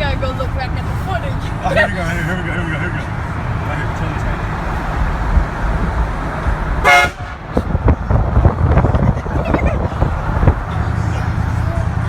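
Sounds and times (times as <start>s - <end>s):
low car rumble: 0.0s - 12.0s
train horn blast: 6.8s - 7.5s.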